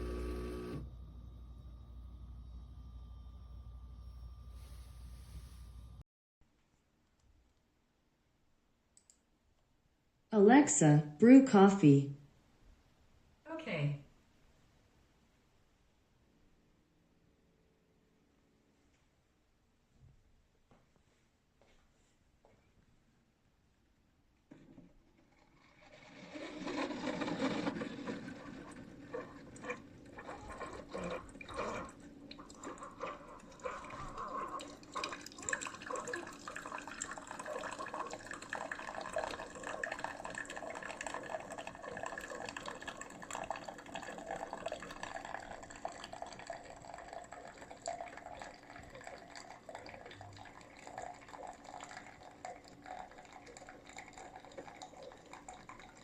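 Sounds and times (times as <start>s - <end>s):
coffee running into a mug: 0.0s - 0.8s, 25.6s - 56.0s.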